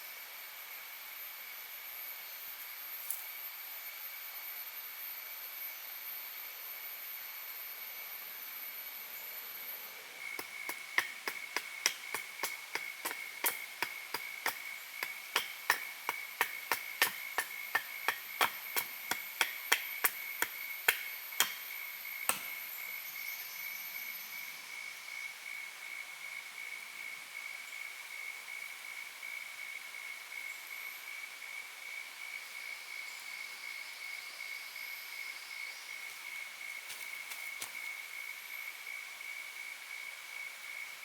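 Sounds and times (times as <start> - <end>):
tool knocking on wood: 10.4 - 21.7, 22.3 - 22.5.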